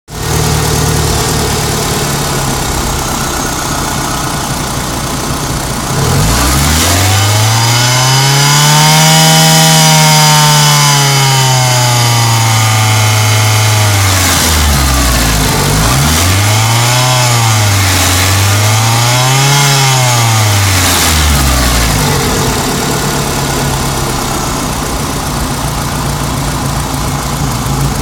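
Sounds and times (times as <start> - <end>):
aircraft piston engine revving: 13.6 - 19.3, 20.0 - 28.0.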